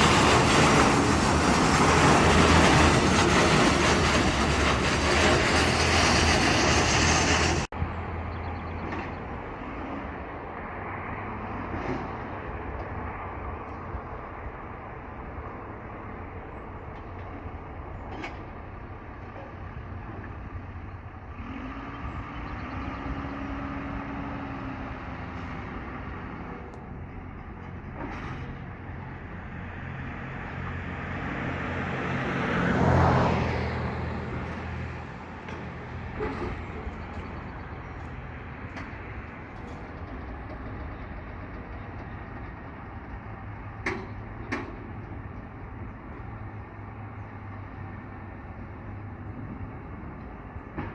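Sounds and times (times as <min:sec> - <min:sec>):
vehicle passing close: 0:00.0 - 0:07.7, 0:29.2 - 0:40.2
engine rumble: 0:00.0 - 0:50.9.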